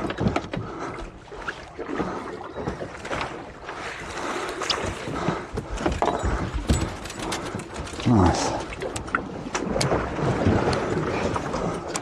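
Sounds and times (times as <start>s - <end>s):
water against boat hull: 0.0s - 12.0s.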